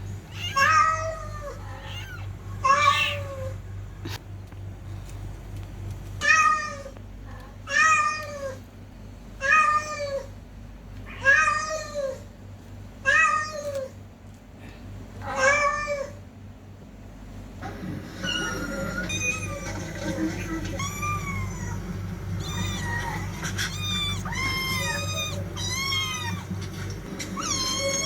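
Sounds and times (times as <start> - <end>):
cat meowing: 0.3 - 3.6, 18.3 - 26.6, 27.2 - 28.0.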